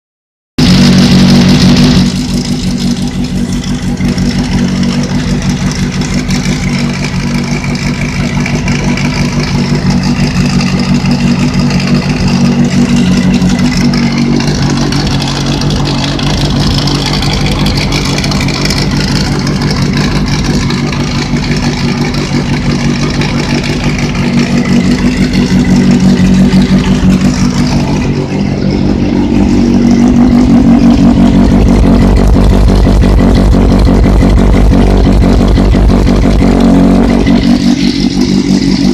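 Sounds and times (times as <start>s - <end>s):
motorcycle engine running: 0.6s - 38.9s
rattle near front sprocket: 1.5s - 30.0s.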